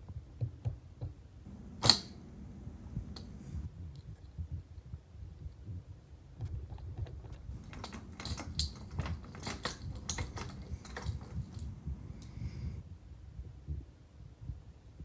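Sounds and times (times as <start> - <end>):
light clicks and taps: 0.4 - 4.4, 6.4 - 12.8.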